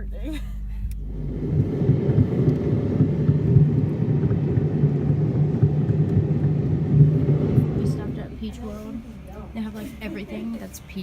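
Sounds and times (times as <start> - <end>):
car rumbling on road: 1.0 - 9.8.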